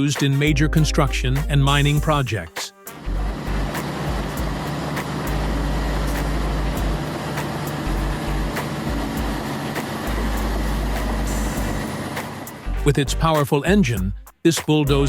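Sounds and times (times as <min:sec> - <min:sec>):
bulldozer diesel engine rumble: 0:03.0 - 0:12.9.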